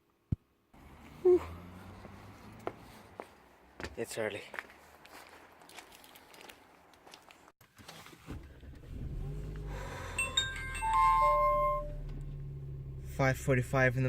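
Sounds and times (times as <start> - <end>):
car engine starting and idling: 8.1 - 14.0
electronic dashboard chime: 10.2 - 12.0.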